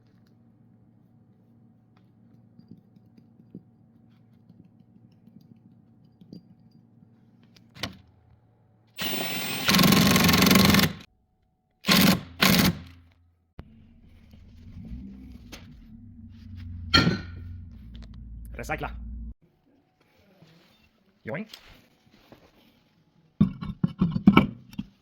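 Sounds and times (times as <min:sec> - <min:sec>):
power tool bursts: 0:09.0 - 0:11.1, 0:11.8 - 0:12.9
faint steady hum: 0:13.6 - 0:19.4.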